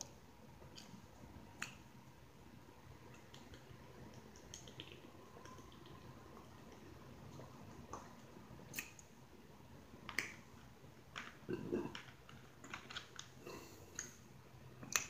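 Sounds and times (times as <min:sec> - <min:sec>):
wet lip smacks and mouth clicks: 0:03.1 - 0:05.9, 0:08.7 - 0:09.1.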